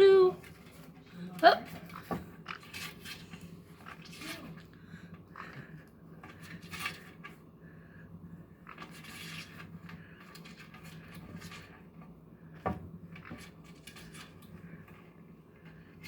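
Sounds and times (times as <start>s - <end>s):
light rustling and scraping: 0.0s - 16.0s.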